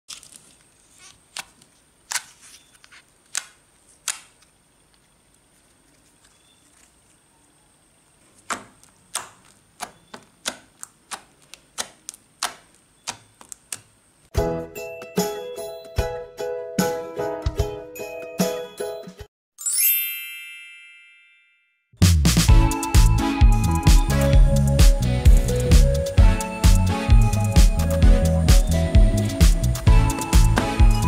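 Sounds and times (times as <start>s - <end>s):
music: 14.3s - 19.3s, 22.0s - 31.0s.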